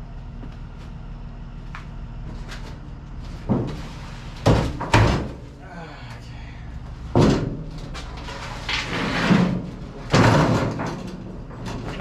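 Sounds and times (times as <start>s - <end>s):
scraping and handling noise: 2.3s - 5.0s.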